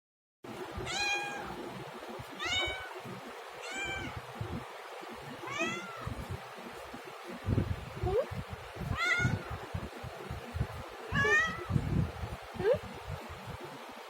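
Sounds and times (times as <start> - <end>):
cat meowing: 0.8 - 1.6, 2.4 - 3.0, 3.6 - 4.2, 5.4 - 6.2, 8.9 - 9.6, 11.1 - 11.8.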